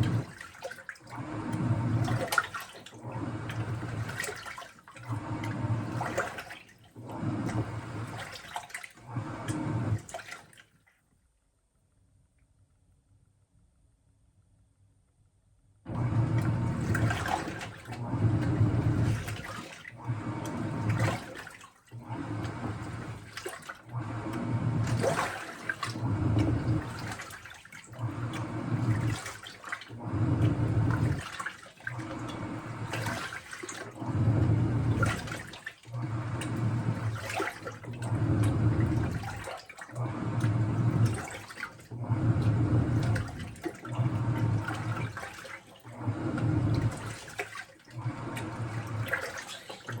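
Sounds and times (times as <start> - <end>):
washing machine water sloshing: 0.0 - 11.0, 15.9 - 50.0.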